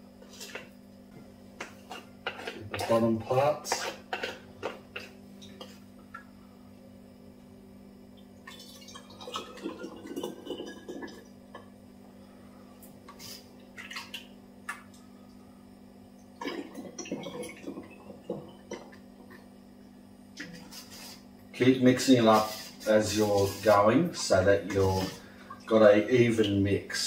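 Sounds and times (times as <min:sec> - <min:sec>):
sauce gurgling into bottles: 0:08.4 - 0:11.4, 0:16.4 - 0:19.5.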